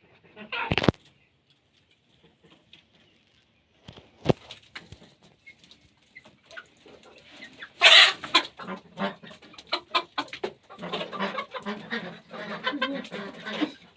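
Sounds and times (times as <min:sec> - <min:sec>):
chickens clucking: 0:00.0 - 0:13.9
chicken squawk: 0:00.2 - 0:00.9, 0:06.5 - 0:13.9.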